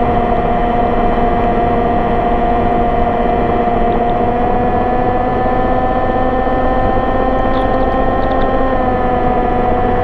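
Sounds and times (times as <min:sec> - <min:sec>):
engine humming: 0:00.0 - 0:10.0.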